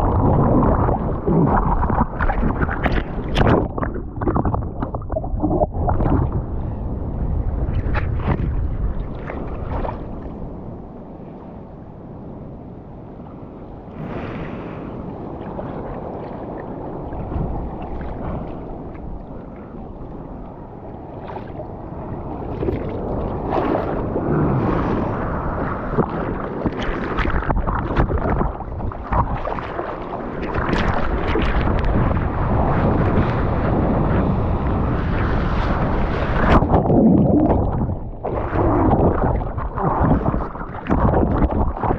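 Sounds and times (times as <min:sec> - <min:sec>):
water splashing over camera: 0:00.0 - 0:06.8, 0:07.4 - 0:10.5, 0:21.1 - 0:41.9
wind buffeting microphone: 0:00.0 - 0:11.0, 0:13.8 - 0:41.9
surf washing: 0:00.0 - 0:41.9.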